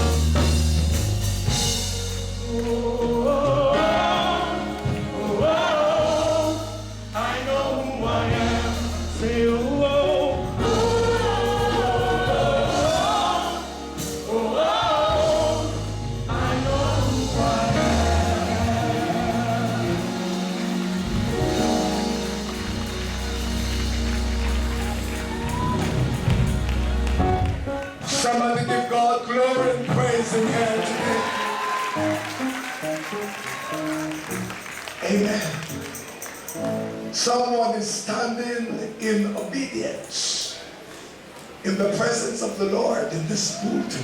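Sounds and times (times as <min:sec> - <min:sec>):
instrumental backing with bass line: 0:00.0 - 0:27.9
choir singing gospel: 0:00.0 - 0:44.0.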